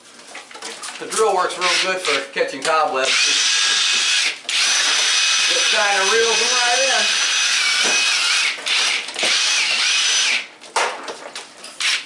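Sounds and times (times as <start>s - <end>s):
power drill motor whine: 3.1s - 10.5s, 11.8s - 12.0s.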